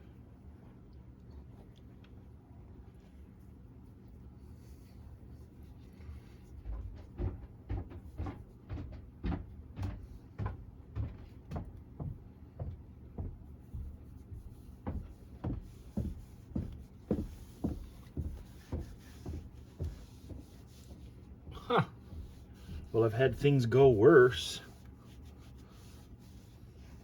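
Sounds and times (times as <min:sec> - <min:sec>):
soft knocks: 0:06.6 - 0:22.9.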